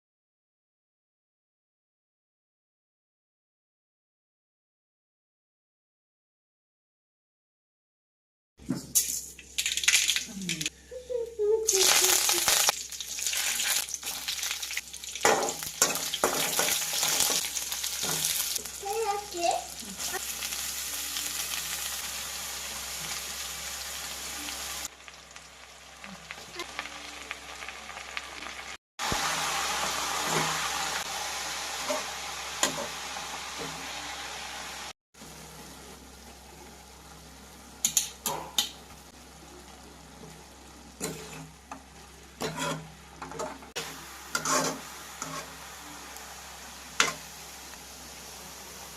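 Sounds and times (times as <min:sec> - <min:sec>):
greens sizzling in a pan: 0:11.6 - 0:48.9.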